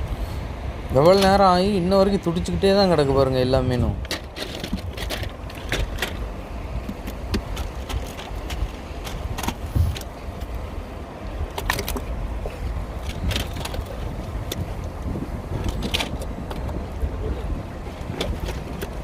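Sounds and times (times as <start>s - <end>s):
wind rumbling on microphone: 0.0s - 19.0s
knocks and rattles: 3.8s - 10.1s, 13.0s - 14.9s, 15.5s - 17.0s, 18.0s - 19.0s.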